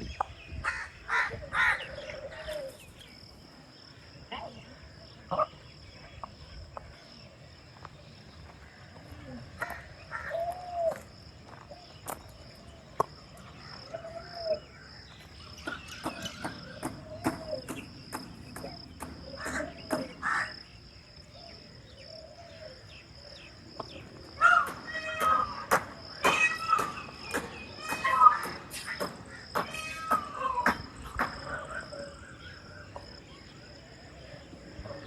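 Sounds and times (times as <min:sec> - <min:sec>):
rising-and-falling calls: 0:24.0 - 0:33.0.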